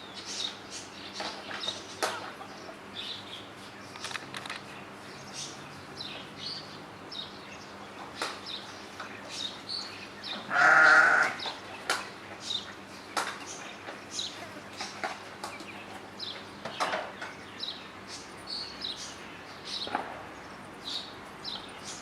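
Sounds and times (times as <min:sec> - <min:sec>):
goat bleating: 0:10.5 - 0:11.4.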